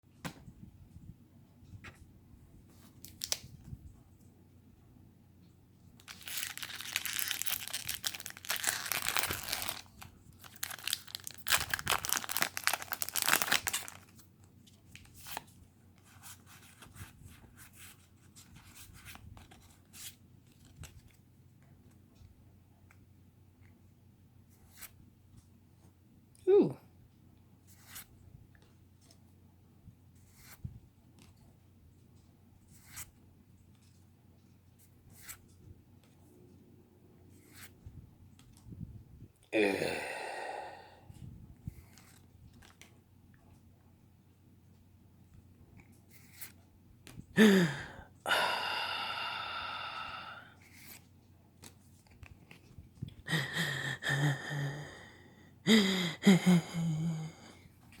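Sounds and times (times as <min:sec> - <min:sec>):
person exhaling breathily: 0:39.6 - 0:41.2, 0:47.4 - 0:50.6, 0:53.2 - 0:57.6.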